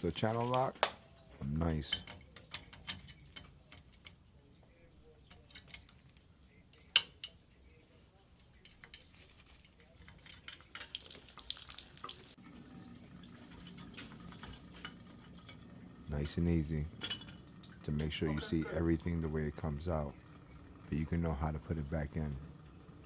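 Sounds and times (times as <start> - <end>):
faint low hum: 0.0 - 11.0
metal parts clicking: 1.9 - 4.2, 5.2 - 6.2.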